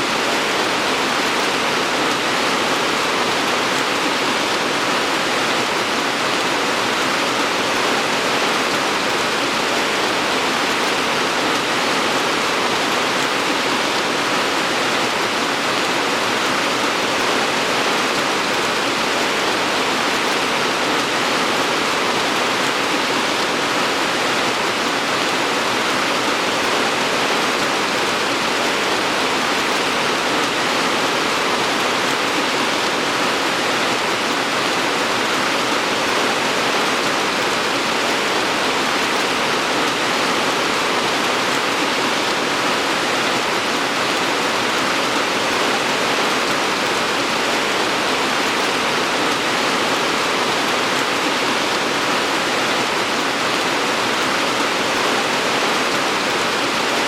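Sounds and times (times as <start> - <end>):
steady rain: 0.0 - 57.0.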